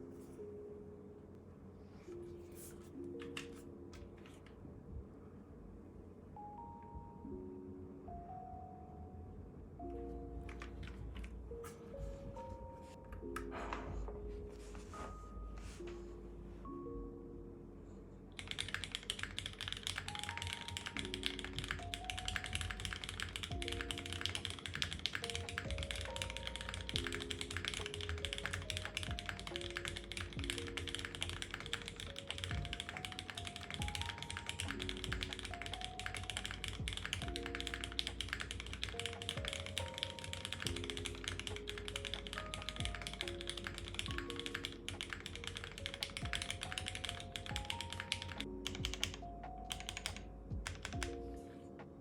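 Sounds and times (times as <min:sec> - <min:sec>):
soft background music: 0:00.0 - 0:52.0
fast keyboard typing: 0:10.4 - 0:11.8, 0:18.4 - 0:51.3.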